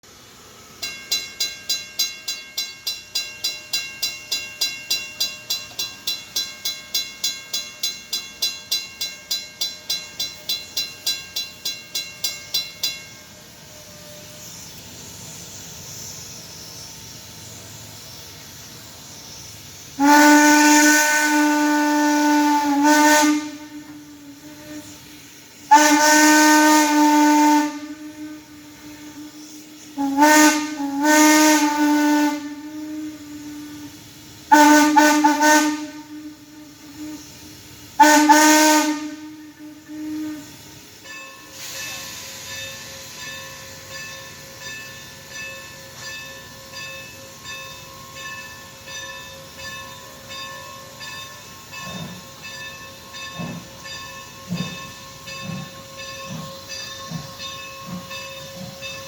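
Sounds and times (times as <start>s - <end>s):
fast-ringing bell: 0.8s - 13.4s, 41.0s - 59.0s
steam whistle blasts: 13.2s - 17.3s, 18.2s - 46.0s.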